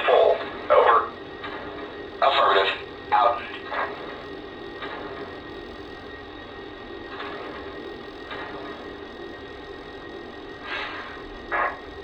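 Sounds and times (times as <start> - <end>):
soft steam puffs: 10.6 - 11.6.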